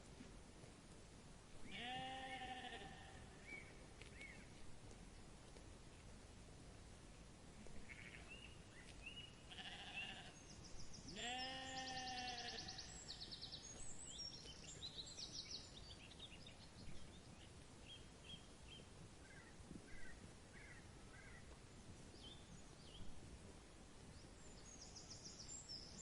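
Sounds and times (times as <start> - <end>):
sheep bleating: 1.7 - 3.3, 7.8 - 8.3, 9.5 - 10.4, 11.1 - 12.8
birds chirping and trilling: 7.9 - 21.4.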